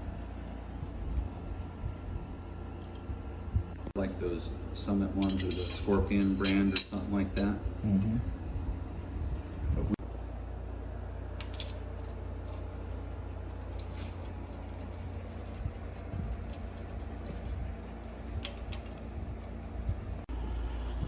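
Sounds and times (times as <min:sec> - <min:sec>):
steady low hum: 0:00.0 - 0:21.0
light clicks of metal parts: 0:05.1 - 0:07.1.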